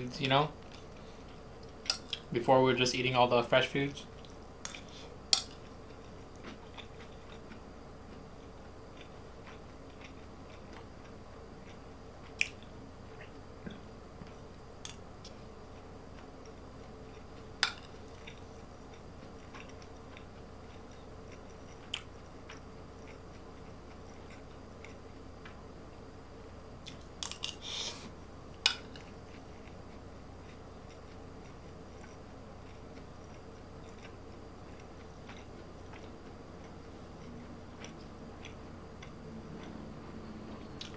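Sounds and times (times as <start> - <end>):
faint hum: 0.0 - 40.9
person chewing food: 4.1 - 25.6, 26.8 - 40.9.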